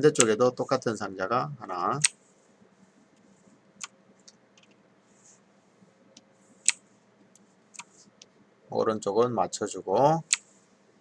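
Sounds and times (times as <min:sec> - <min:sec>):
faint hum: 0:00.0 - 0:11.0
mouse and keyboard clicks: 0:06.2 - 0:06.8.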